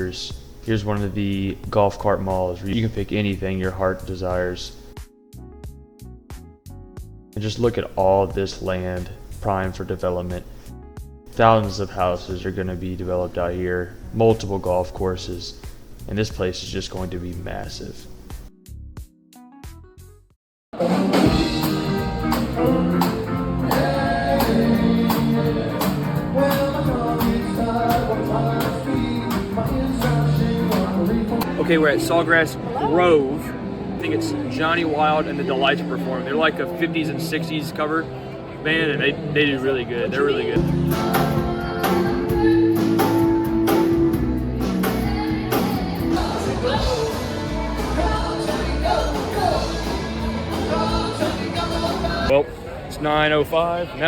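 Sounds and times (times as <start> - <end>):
live band playing upbeat song: 20.8 - 31.6, 40.6 - 52.3
person singing: 20.8 - 31.6, 40.5 - 52.3.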